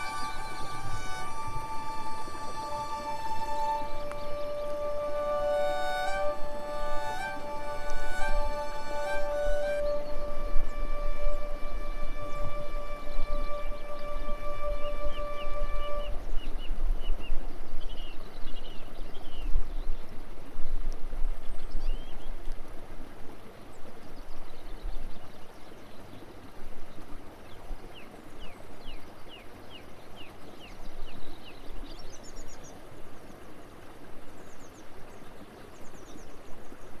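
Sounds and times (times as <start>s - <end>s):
songbirds chirping: 0.0s - 20.2s
background hiss: 0.0s - 25.8s.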